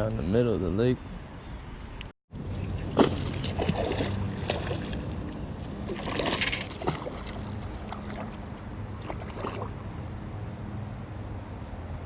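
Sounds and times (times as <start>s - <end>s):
crickets chirring: 2.4s - 12.0s
paddle splashing in water: 2.9s - 9.8s.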